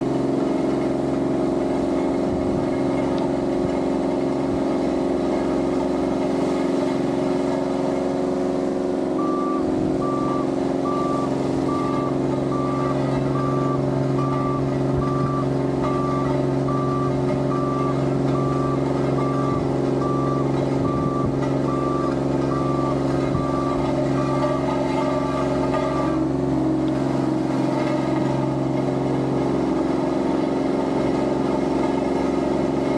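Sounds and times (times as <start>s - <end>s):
diesel engine running: 0.0s - 32.9s
reversing alarm beeps: 9.2s - 24.4s.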